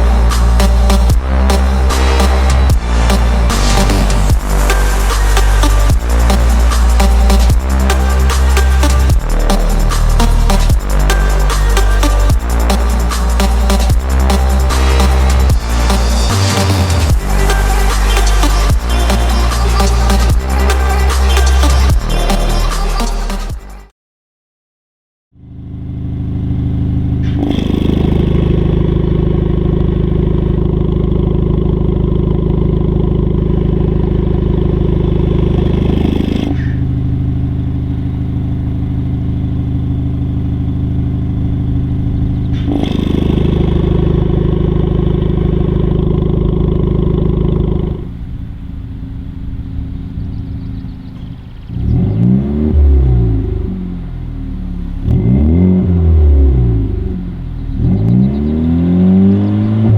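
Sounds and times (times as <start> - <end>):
engine throttle blips: 0.0 - 23.8, 25.4 - 59.9
car engine idling: 0.0 - 23.9, 25.4 - 59.9.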